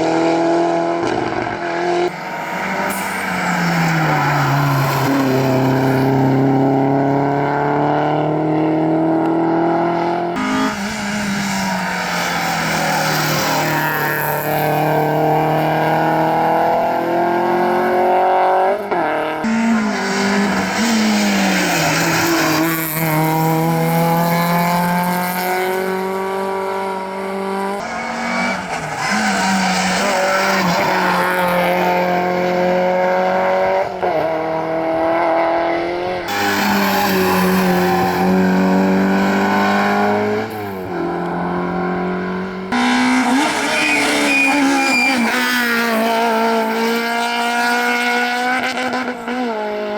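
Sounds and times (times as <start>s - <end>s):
rally car engine revving: 0.0s - 49.9s.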